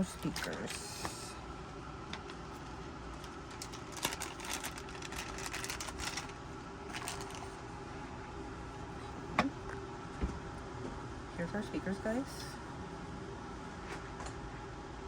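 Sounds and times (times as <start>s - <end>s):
steady low hum: 0.0s - 15.0s
packaging rustling and clicks: 2.2s - 7.6s.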